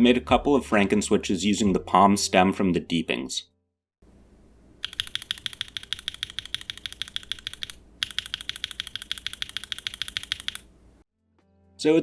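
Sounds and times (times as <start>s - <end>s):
fast mechanical keyboard typing: 4.8s - 10.7s.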